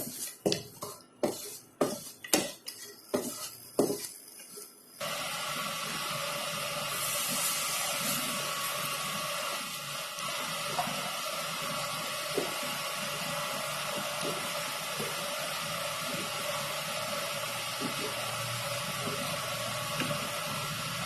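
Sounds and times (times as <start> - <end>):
batter hissing in a pan: 0.0 - 21.0.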